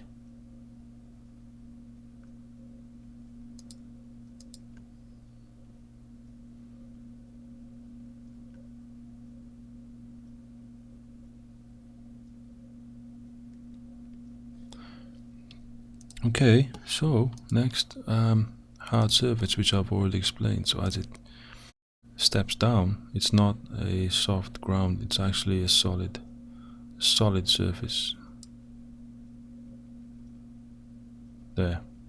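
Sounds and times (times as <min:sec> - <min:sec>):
low electrical hum: 0:00.0 - 0:32.0
faint clicks: 0:03.6 - 0:04.8, 0:15.5 - 0:17.6.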